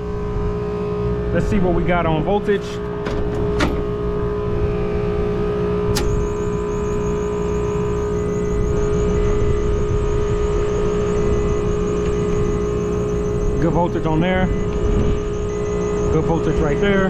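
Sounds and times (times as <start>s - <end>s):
air conditioning machinery humming: 0.0s - 17.0s
sharp click: 5.9s - 6.4s.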